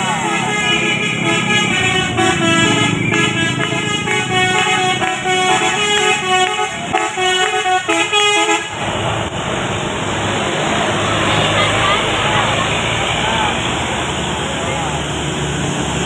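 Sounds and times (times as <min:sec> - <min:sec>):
bus musical horn melody: 0:00.0 - 0:08.9
broad noisy rush: 0:00.0 - 0:16.0.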